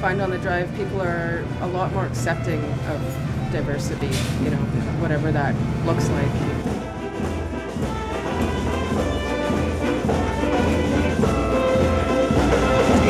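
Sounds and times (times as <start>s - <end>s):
music with held melody notes: 5.9s - 13.0s.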